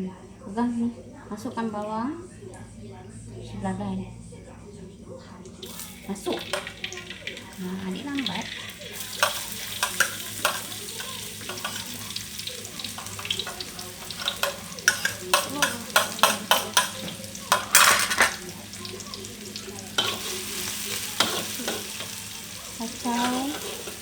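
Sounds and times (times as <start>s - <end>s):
spoon knocking and scraping pan: 5.6s - 7.4s, 8.9s - 19.0s, 20.0s - 24.0s
onion sizzling in hot oil: 5.6s - 24.0s.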